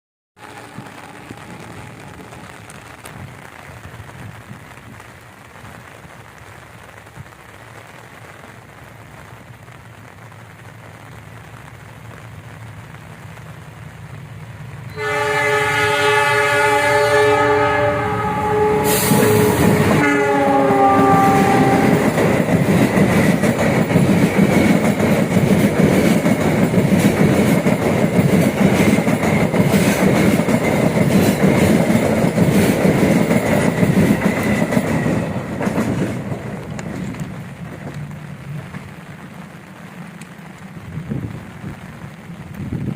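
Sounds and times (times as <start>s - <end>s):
train rumble: 0.4s - 7.8s, 8.4s - 42.9s
train horn: 14.9s - 22.2s
train wheels clattering on rails: 18.8s - 38.9s.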